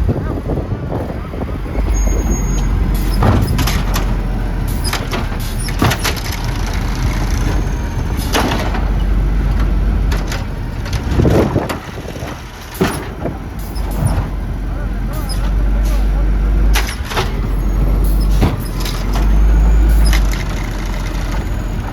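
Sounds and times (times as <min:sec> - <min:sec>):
wind rumble on microphone: 0:00.0 - 0:14.6
garbage truck engine rumble: 0:00.0 - 0:21.9
metallic clanks and bangs: 0:01.8 - 0:21.9.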